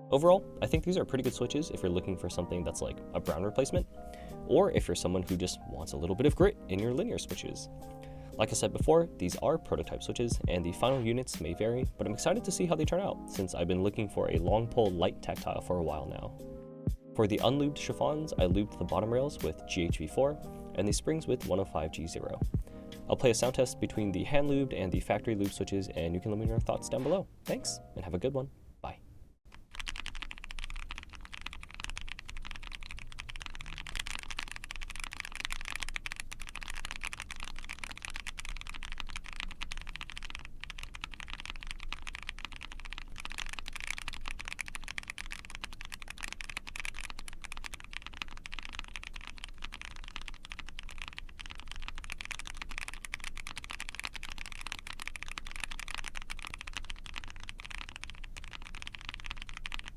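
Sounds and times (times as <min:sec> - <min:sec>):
fast typing on mechanical keyboard: 0:04.8 - 0:07.6, 0:29.5 - 0:59.9.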